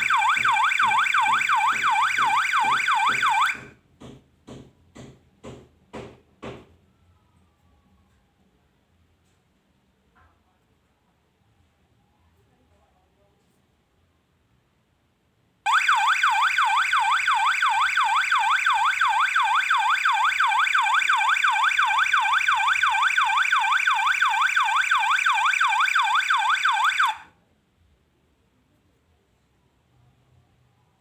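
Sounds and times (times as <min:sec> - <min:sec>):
warbling electronic alarm siren: 0:00.0 - 0:03.7, 0:15.7 - 0:27.2.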